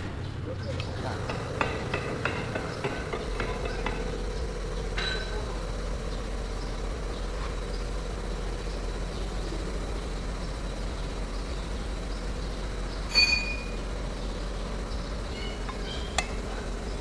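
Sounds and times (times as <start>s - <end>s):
steady low hum: 0.0s - 17.0s
sharp metallic clank: 12.9s - 14.8s.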